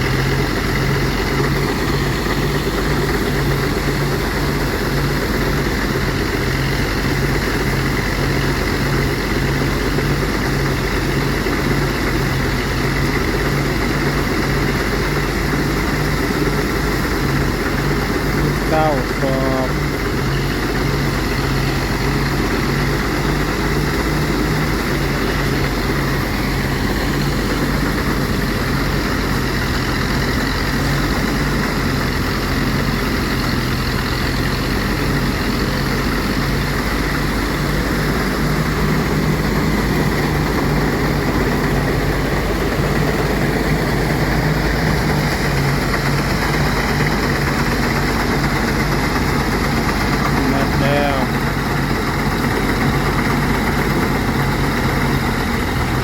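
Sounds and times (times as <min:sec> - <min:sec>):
threshing machine engine running: 0:00.0 - 0:56.0.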